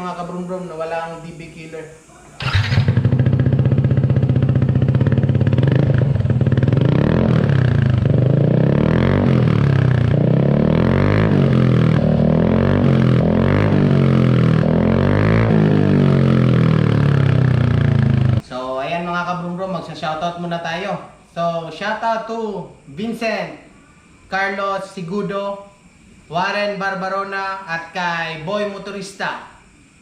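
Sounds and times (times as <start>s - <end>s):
scooter engine revving: 2.4s - 18.4s.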